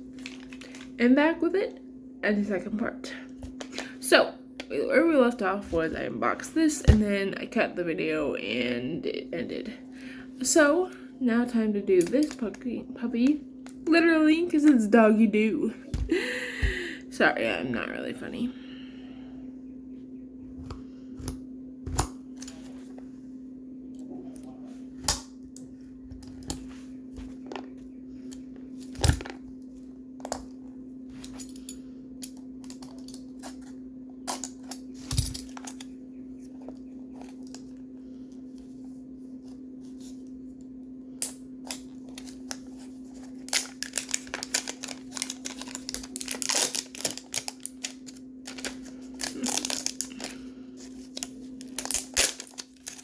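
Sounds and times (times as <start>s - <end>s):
packaging crinkling and tearing: 0.0s - 1.0s, 41.7s - 53.0s
steady low hum: 0.0s - 53.0s.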